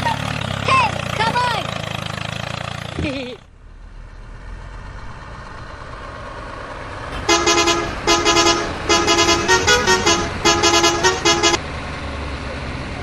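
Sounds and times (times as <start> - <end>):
horn tooting: 7.1 - 11.6
low steady rumble: 7.1 - 11.6.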